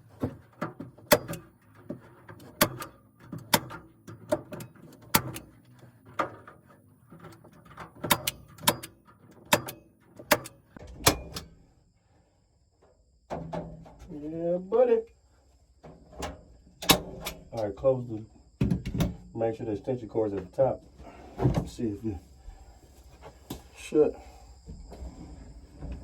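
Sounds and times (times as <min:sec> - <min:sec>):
sharp knocks and clatter: 0:00.0 - 0:11.5, 0:13.3 - 0:14.1.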